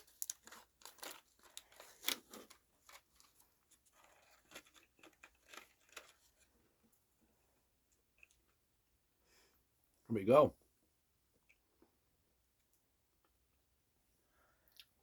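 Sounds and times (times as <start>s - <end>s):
plastic wrapper crinkling: 0.0s - 6.6s.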